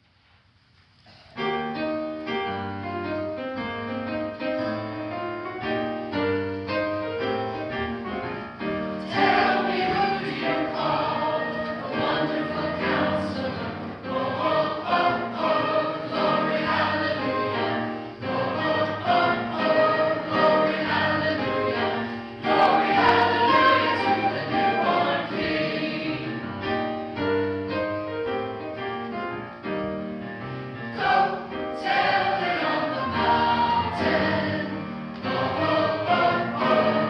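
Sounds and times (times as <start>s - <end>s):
choir singing: 9.0s - 26.8s, 30.8s - 37.0s.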